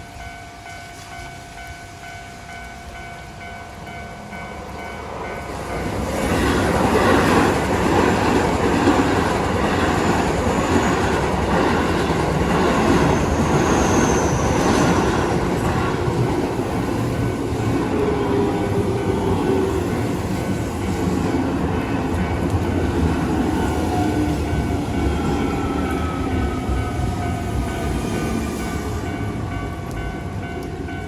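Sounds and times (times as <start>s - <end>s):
level crossing warning bell: 0.0s - 9.0s, 9.7s - 31.0s
train wheels on rails: 0.0s - 31.0s
high wheel squeals: 12.9s - 15.4s.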